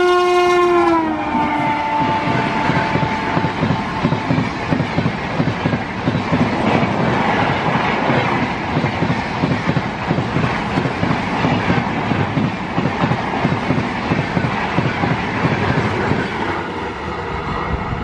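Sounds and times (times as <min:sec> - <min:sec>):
train wheels clattering over rails: 0:01.6 - 0:17.0.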